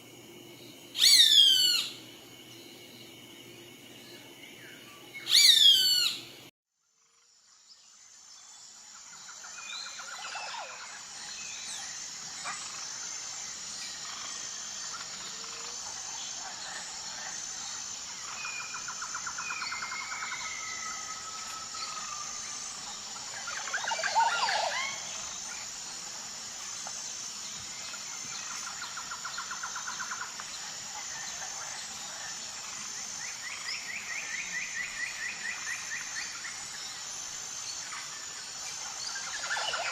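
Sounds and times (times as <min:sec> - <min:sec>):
high insect drone: 0:00.0 - 0:39.9
bird calls: 0:01.0 - 0:02.0, 0:05.2 - 0:06.3.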